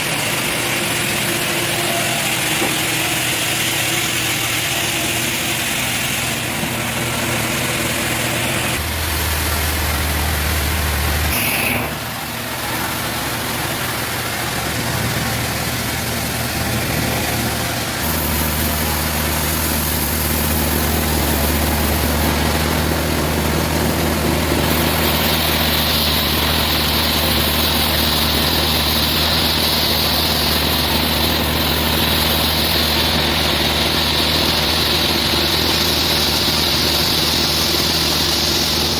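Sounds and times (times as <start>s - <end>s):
sawmill machinery humming: 0.0s - 38.9s.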